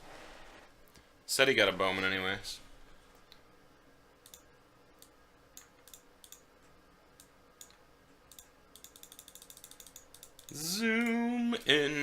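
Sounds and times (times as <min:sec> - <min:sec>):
faint clicking: 0:04.2 - 0:11.2.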